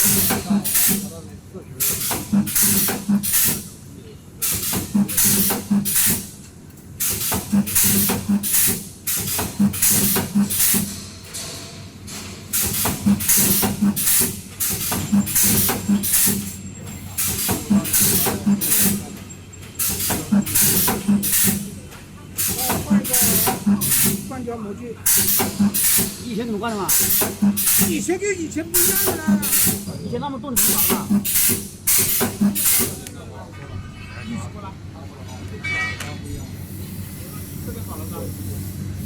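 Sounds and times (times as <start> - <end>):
pneumatic air hisses: 0.0 - 1.1, 1.8 - 3.7, 4.4 - 6.4, 7.0 - 11.0, 12.5 - 19.1, 19.8 - 21.7, 22.4 - 24.2, 25.1 - 26.2, 26.9 - 27.9, 28.8 - 29.9, 30.6 - 33.0, 36.6 - 39.0.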